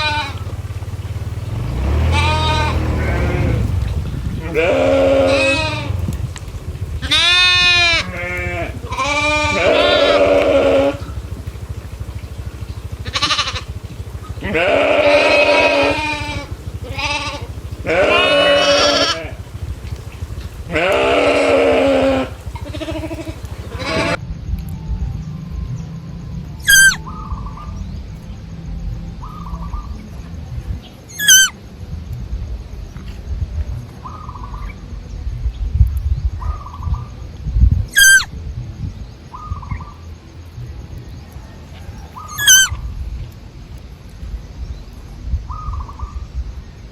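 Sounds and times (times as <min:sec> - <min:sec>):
goats bleating: 0:00.0 - 0:00.9, 0:02.0 - 0:03.8, 0:04.4 - 0:06.1, 0:07.0 - 0:11.7, 0:12.8 - 0:24.2.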